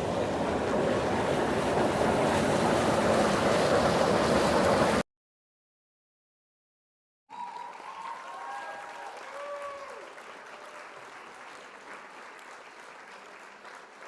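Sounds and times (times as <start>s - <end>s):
applause: 7.3s - 14.0s
whistling and cheering: 7.3s - 14.0s.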